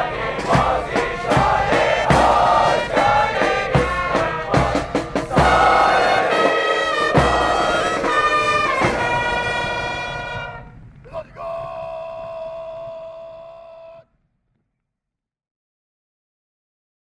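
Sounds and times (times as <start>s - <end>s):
bass drum beat: 0.0s - 6.4s
brass band playing: 0.0s - 10.8s.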